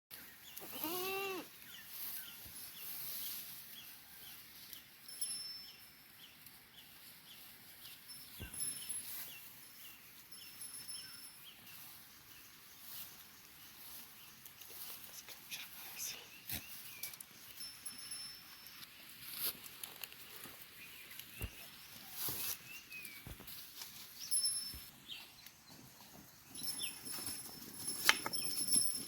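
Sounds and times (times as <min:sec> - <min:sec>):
goat bleating: 0:00.6 - 0:01.5.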